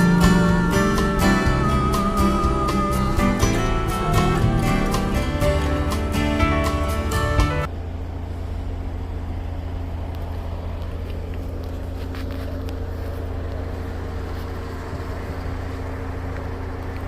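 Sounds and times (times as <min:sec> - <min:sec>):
vehicle engine humming: 0:00.0 - 0:17.0.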